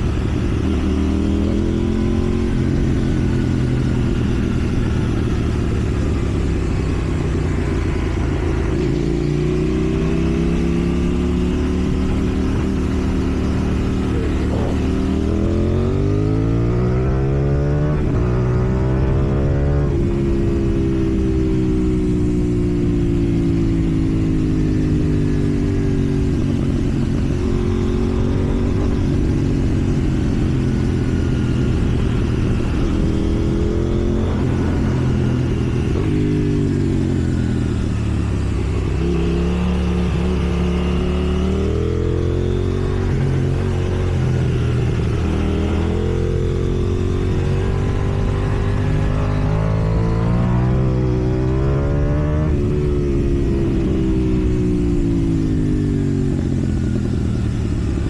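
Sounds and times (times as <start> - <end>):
motorcycle engine revving: 0.0 - 58.0
wind noise: 0.0 - 58.0.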